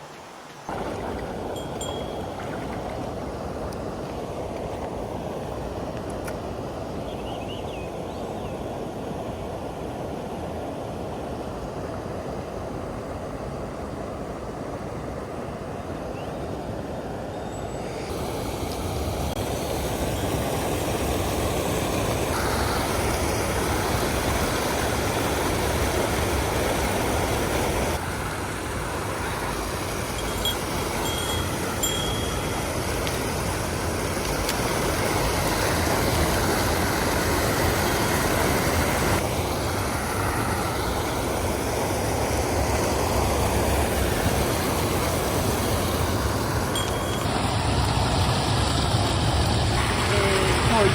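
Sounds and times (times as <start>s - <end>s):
water rushing over rocks: 0.0s - 6.0s, 18.1s - 50.9s.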